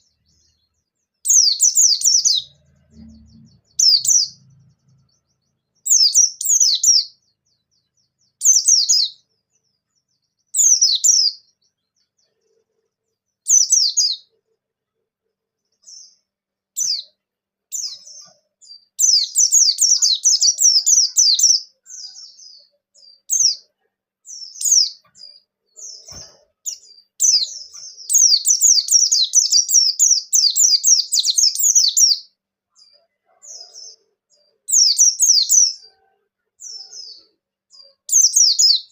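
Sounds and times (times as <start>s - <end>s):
bird singing high falling chirps: 1.2s - 9.2s, 24.3s - 32.4s.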